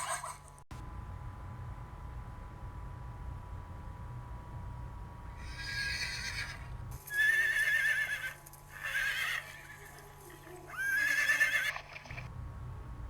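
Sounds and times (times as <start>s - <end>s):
horse whinnying: 5.4s - 12.3s.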